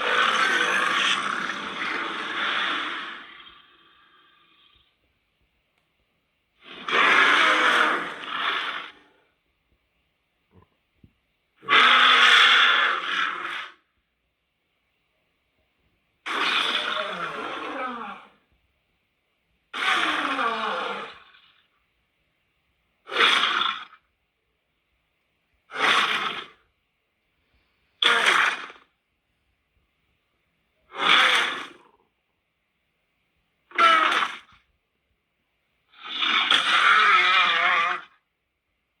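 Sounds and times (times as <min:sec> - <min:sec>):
monster vocalizations: 0:00.0 - 0:04.2, 0:06.7 - 0:09.1, 0:16.3 - 0:18.4, 0:19.8 - 0:21.3, 0:36.0 - 0:38.2.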